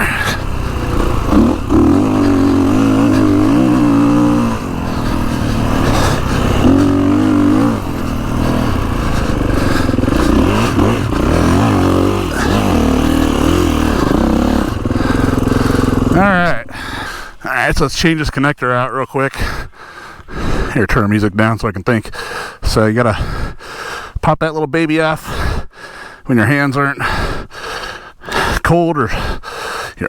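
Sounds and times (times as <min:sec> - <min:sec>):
motorcycle engine revving: 0:00.0 - 0:17.2.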